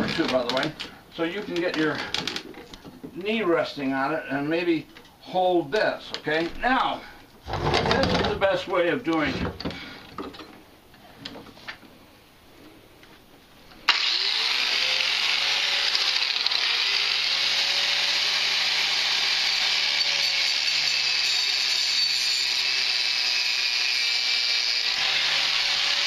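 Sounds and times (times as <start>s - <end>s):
power tool cutting through chain: 13.9s - 26.0s.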